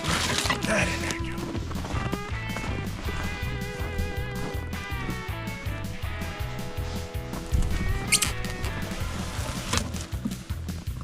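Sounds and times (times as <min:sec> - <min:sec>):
background music with low beat: 0:00.0 - 0:11.0.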